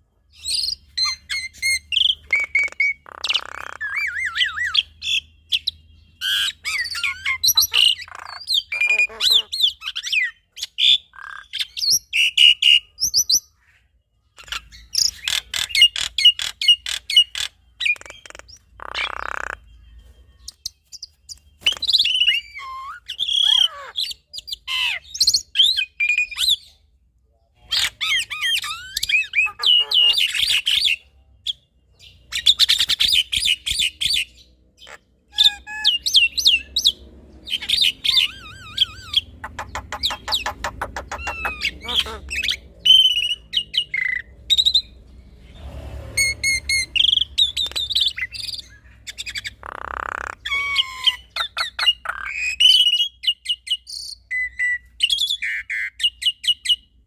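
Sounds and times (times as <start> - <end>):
birds chattering song duet: 0.1 - 57.0
harsh rasping bird call: 37.4 - 44.3.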